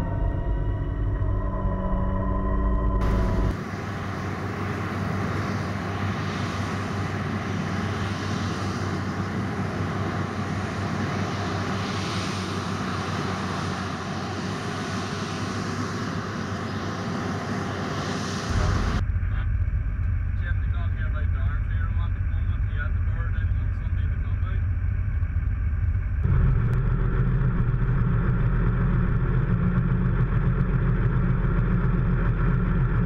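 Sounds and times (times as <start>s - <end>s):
heavy farm machinery running: 3.0s - 33.0s.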